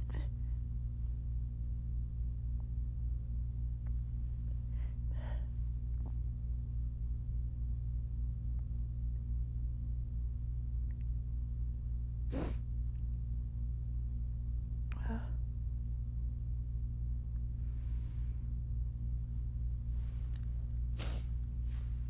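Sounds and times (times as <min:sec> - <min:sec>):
steady low hum: 0:00.0 - 0:22.0
person breathing in: 0:21.0 - 0:21.4.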